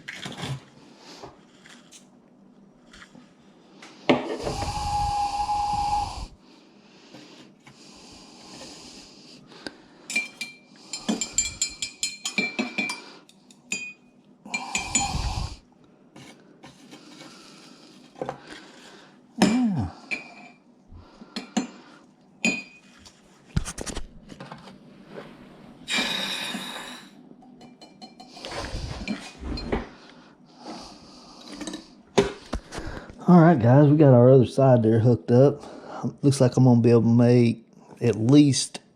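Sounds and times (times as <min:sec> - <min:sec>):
short hissing bursts: 0:04.4 - 0:06.4, 0:14.7 - 0:15.6
metal tools clinking on bench: 0:10.1 - 0:13.0.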